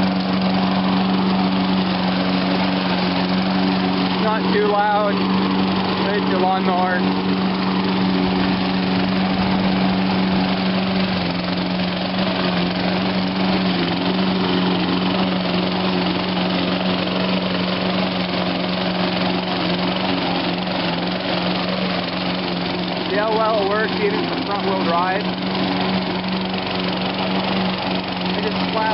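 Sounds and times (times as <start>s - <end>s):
lawn mower engine running: 0.0s - 28.9s.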